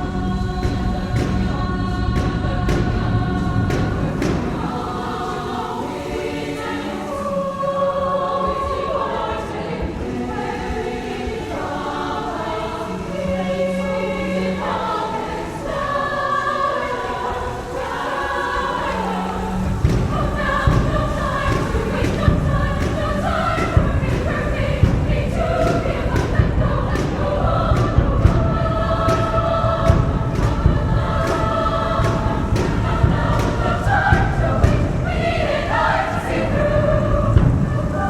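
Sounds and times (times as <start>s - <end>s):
low thumps: 0.0s - 6.3s, 19.4s - 38.0s
choir singing: 0.0s - 38.0s.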